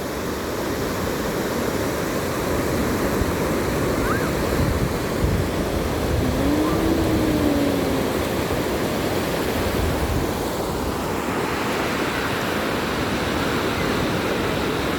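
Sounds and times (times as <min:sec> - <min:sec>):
faint rising tone: 0:06.0 - 0:08.8.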